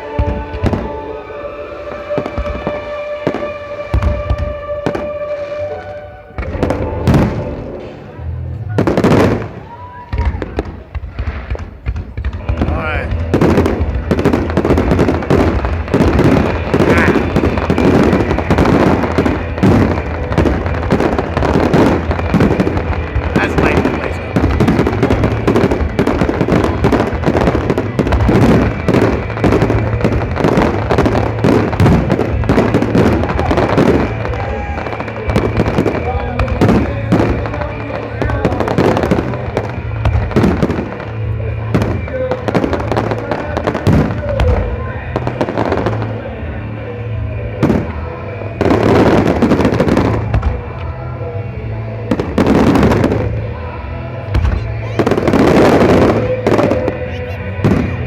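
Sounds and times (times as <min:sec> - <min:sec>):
low rumble: 0:00.0 - 0:09.6
fireworks booming and crackling: 0:00.0 - 0:58.0
music from outdoor sound system: 0:00.0 - 0:58.0.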